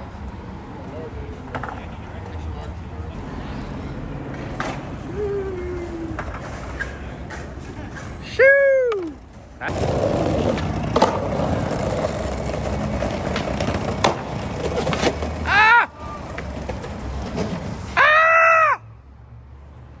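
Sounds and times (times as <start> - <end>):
skateboard wheels rolling on pavement: 0.0 - 20.0
skateboard clacks: 0.2 - 18.0
person calling out: 5.1 - 6.3, 15.5 - 16.2
person shouting: 5.1 - 6.3, 8.3 - 9.2, 15.4 - 16.3, 18.0 - 18.9.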